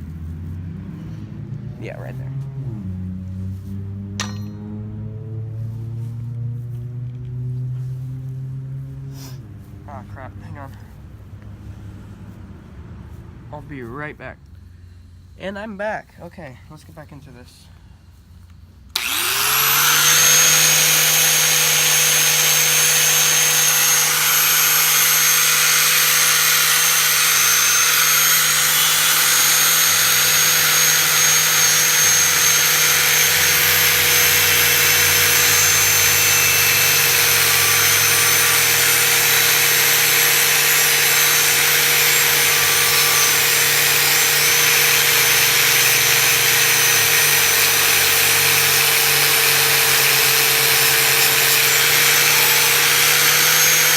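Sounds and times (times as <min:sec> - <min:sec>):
angle grinder grinding metal: 0:04.2 - 0:04.9, 0:19.0 - 0:53.9.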